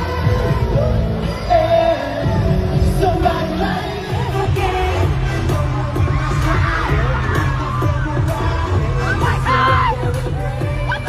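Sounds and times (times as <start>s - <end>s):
amplified pop music: 0.0s - 11.0s
fans screaming and whooping: 4.4s - 11.0s.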